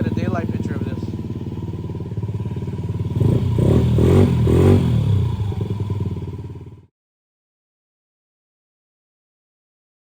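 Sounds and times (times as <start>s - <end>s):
scooter engine idling and revving: 0.0s - 6.9s.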